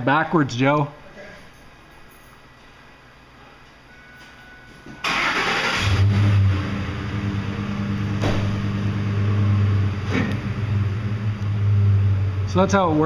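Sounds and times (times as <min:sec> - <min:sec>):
truck engine humming: 0:05.0 - 0:13.0.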